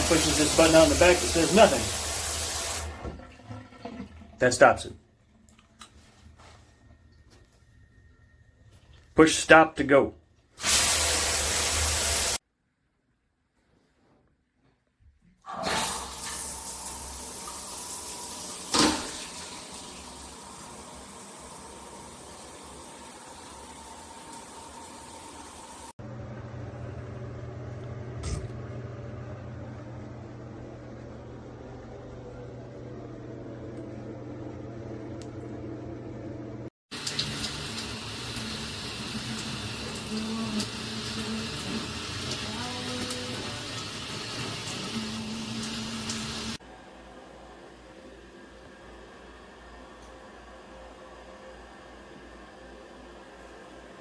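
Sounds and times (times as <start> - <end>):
shower head spraying water: 0.0 - 3.0, 10.6 - 12.4, 36.9 - 46.6.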